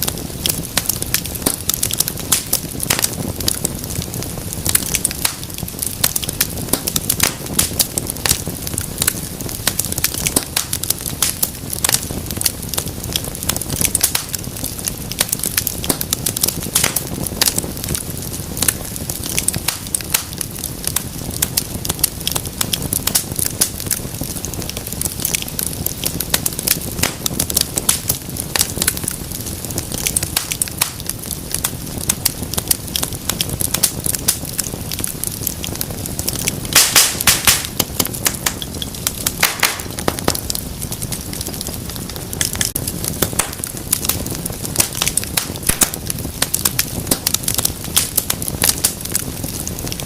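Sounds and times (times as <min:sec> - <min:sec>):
low rumble of flame: 0:00.0 - 0:50.0
wood fire crackling and popping: 0:00.0 - 0:50.0.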